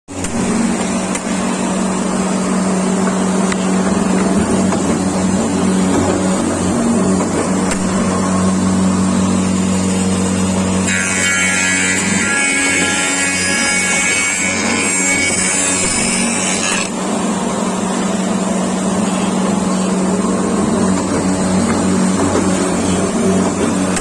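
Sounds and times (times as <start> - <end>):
power tool motor humming: 6.2 - 17.0
bright high-pitched tool sound: 10.8 - 17.0.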